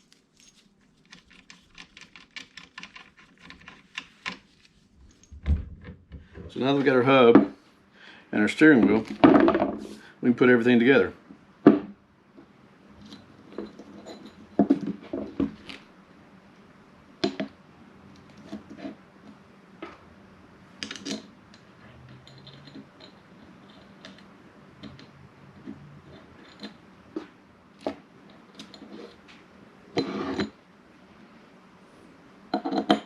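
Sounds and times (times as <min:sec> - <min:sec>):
metal tools clinking and knocking: 0:13.0 - 0:15.7, 0:22.0 - 0:24.2, 0:26.1 - 0:26.8.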